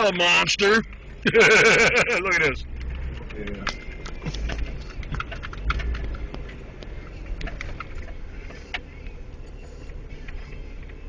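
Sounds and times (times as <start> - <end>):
vehicle engine running low: 0.2 - 11.0
irregular clicks and knocks: 2.7 - 8.9.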